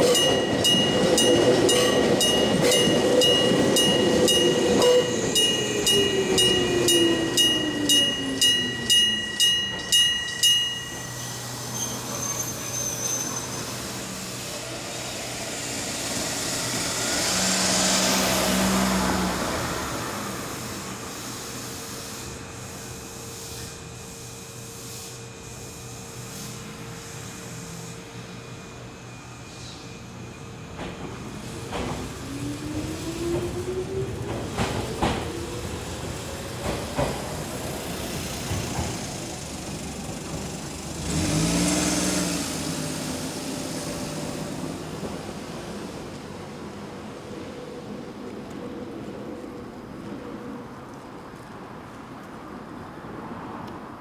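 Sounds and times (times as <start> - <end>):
level-crossing bell ringing: 0.0 - 12.1
train running: 0.0 - 52.5
vehicle passing: 15.8 - 20.2.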